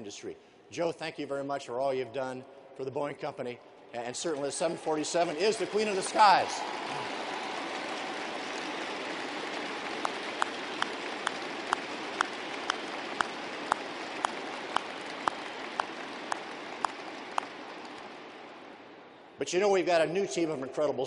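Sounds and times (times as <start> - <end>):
crowd applauding: 4.0 - 19.0
sharp loud clap: 5.2 - 18.6.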